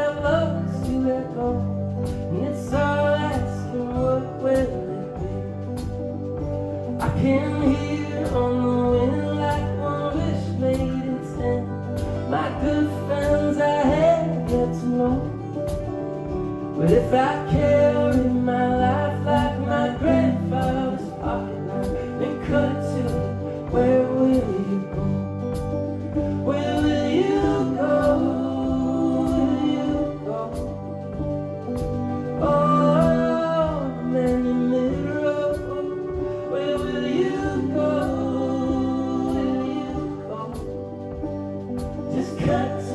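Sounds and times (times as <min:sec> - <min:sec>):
folk band playing: 0:00.0 - 0:42.9
man singing: 0:00.0 - 0:42.9.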